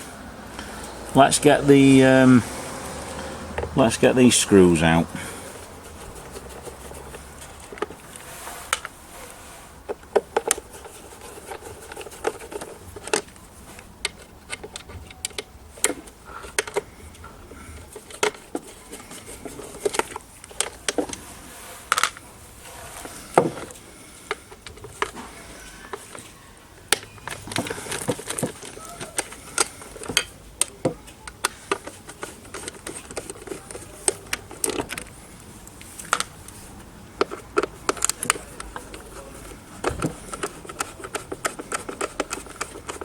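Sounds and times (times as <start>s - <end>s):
small clicks and clatters: 37.2s - 43.0s.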